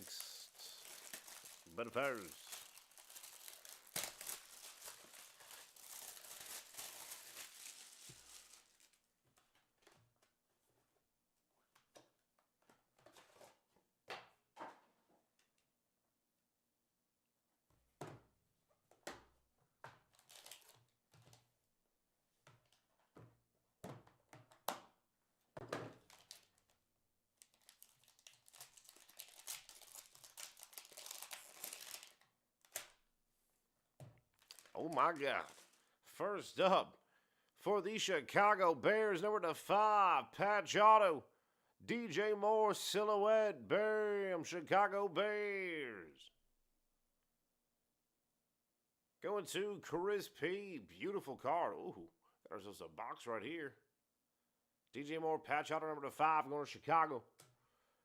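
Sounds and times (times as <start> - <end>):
wrapper rustling and tearing: 0.0 - 9.1, 20.1 - 20.9, 26.0 - 26.8, 27.4 - 33.0, 34.3 - 35.9.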